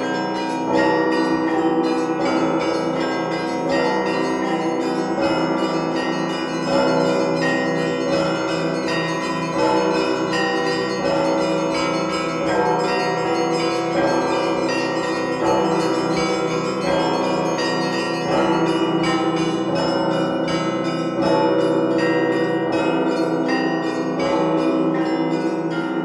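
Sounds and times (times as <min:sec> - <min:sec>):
deep bells in a steady beat: 0:00.0 - 0:26.0
small bells chiming rapidly: 0:00.0 - 0:26.0.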